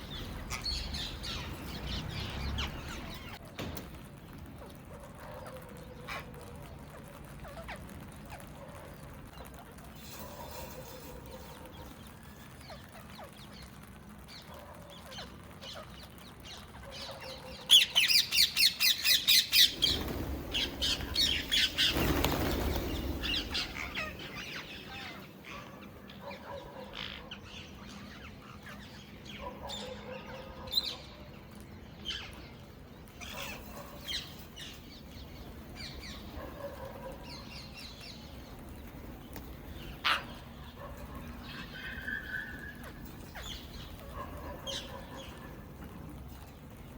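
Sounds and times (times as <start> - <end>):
parrots screeching and squawking: 17.1 - 26.2, 41.2 - 44.1.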